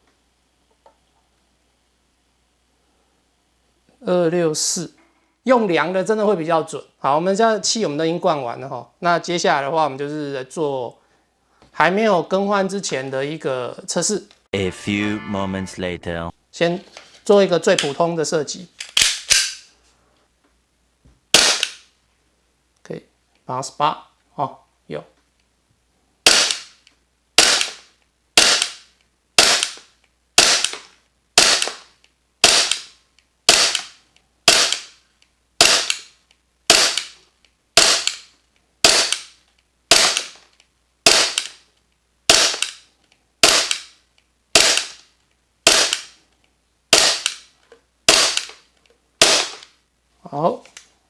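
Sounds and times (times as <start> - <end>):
airsoft pistol firing shots: 21.3 - 21.8, 26.2 - 26.8, 27.4 - 35.0, 35.6 - 36.1, 36.7 - 37.2, 37.8 - 40.4, 41.0 - 41.6, 42.3 - 42.8, 43.4 - 43.9, 44.5 - 45.0, 45.6 - 46.2, 46.9 - 47.5, 48.1 - 48.6, 49.2 - 49.7.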